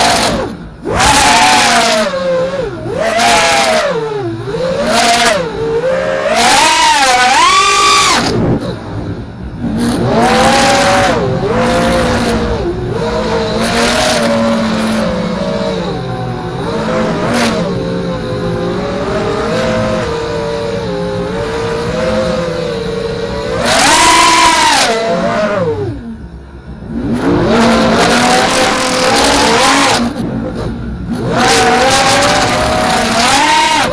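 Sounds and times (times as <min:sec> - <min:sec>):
quadcopter motors whining: 0:00.0 - 0:33.9
wind noise rushes: 0:07.4 - 0:15.3.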